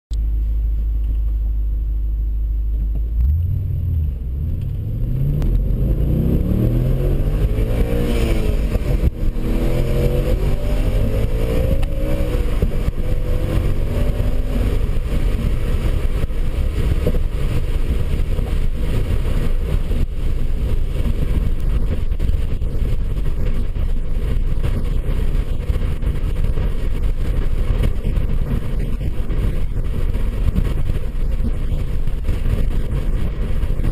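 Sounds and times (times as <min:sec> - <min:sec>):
vehicle engine accelerating: 0:00.4 - 0:33.9.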